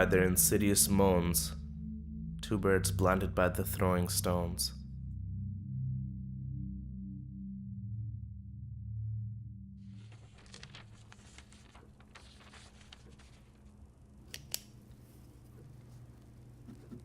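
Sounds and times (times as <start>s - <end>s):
steady low hum: 0.0s - 9.8s.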